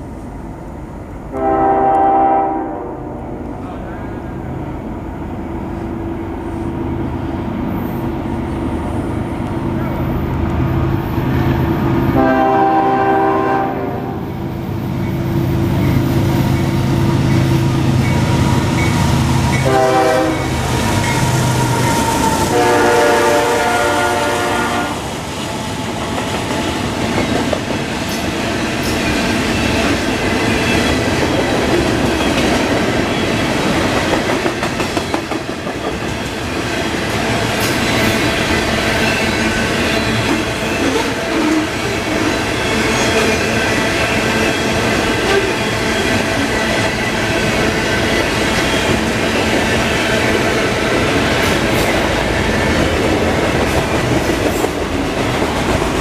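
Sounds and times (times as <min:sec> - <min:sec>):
locomotive horn blasts: 0:01.3 - 0:03.5, 0:12.1 - 0:14.4, 0:19.5 - 0:20.6, 0:22.5 - 0:25.0
freight cars clacking on rails: 0:25.7 - 0:56.0.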